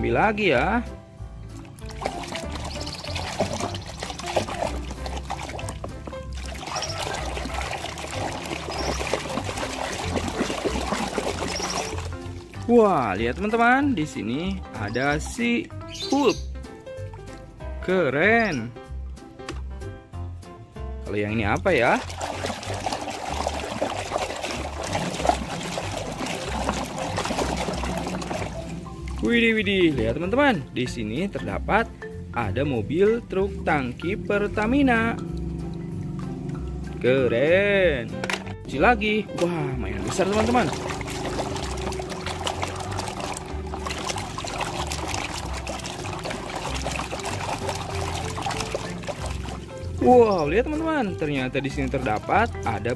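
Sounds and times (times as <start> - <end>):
water running and splashing: 1.5 - 13.8, 21.5 - 30.2, 39.5 - 52.9.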